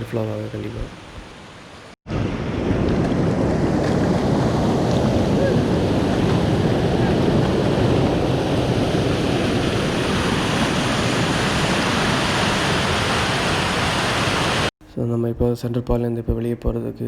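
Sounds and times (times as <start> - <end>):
river water rushing over rocks: 9.9 - 14.7.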